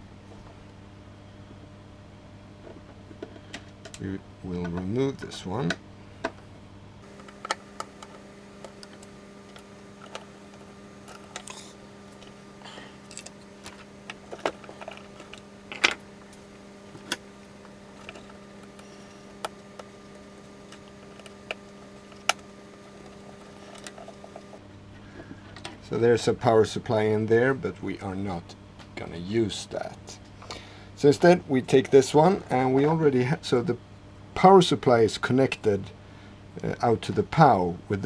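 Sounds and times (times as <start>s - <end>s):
faint steady hum: 7.0s - 24.6s
module clicks and knocks: 7.1s - 24.6s.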